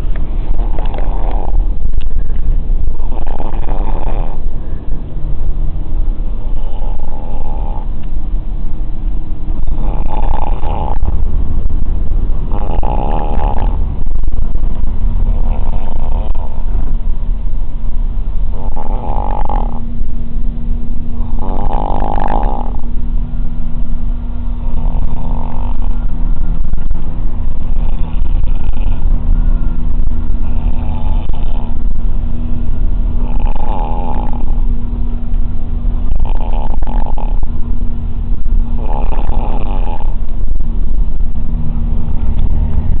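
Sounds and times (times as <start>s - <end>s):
bus engine drone: 0.0s - 43.0s
person snoring: 0.5s - 1.6s, 3.0s - 4.5s, 6.4s - 7.9s, 9.7s - 11.1s, 12.5s - 13.8s, 15.3s - 16.6s, 18.5s - 19.8s, 21.2s - 22.8s, 30.4s - 31.8s, 33.2s - 34.6s, 36.1s - 37.4s, 38.8s - 40.2s.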